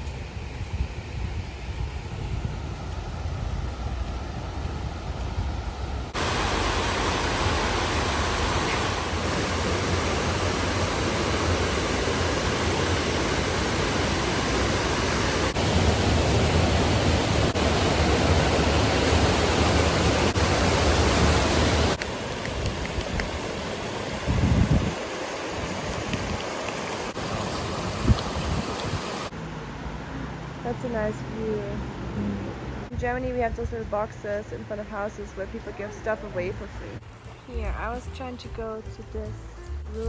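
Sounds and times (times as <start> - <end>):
rushing water hiss: 2.8 - 29.3.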